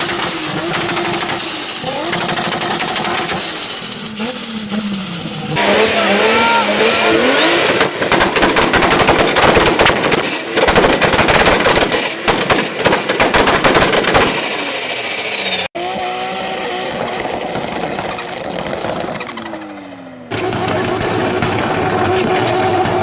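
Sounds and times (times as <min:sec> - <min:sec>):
turbo flutter chatter: 0:00.0 - 0:05.6
engine running steadily: 0:00.0 - 0:05.8, 0:15.8 - 0:23.0
turbo whistle: 0:00.0 - 0:08.0
turbo car engine revving: 0:00.0 - 0:09.4, 0:15.4 - 0:23.0.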